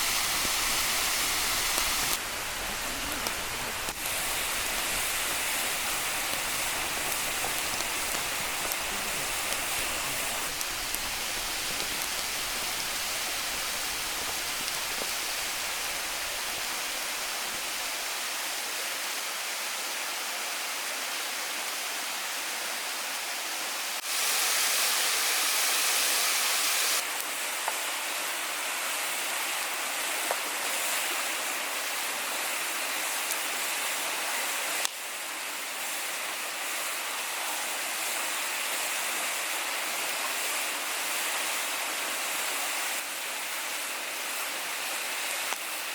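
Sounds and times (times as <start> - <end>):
waterfall rushing: 0.0 - 18.8.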